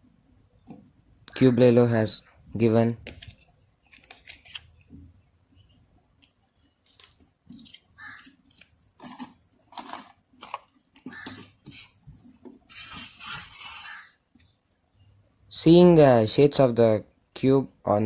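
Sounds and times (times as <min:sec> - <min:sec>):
paper and card packaging rustling: 0:02.6 - 0:04.8, 0:06.8 - 0:11.9.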